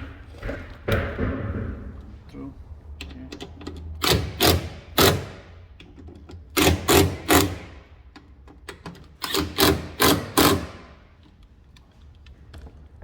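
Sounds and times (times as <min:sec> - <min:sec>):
sharp knocks: 0:00.0 - 0:02.0.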